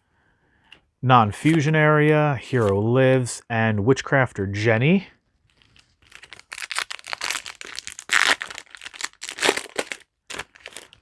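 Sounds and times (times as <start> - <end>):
foil wrapper crinkling and tearing: 5.4 - 11.0.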